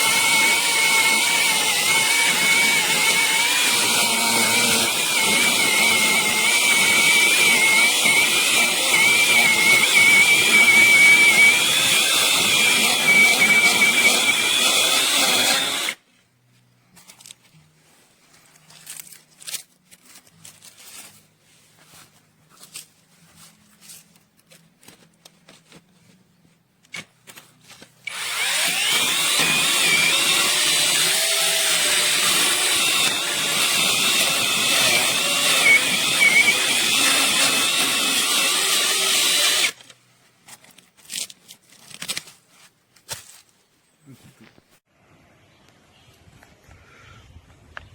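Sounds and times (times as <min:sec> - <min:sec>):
mini chainsaw cutting wood: 0:00.0 - 0:16.0, 0:28.0 - 0:39.9.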